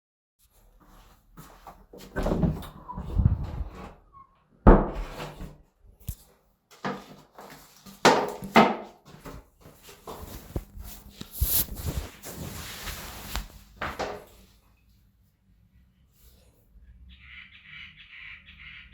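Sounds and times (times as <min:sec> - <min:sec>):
rustling: 0:09.1 - 0:14.5.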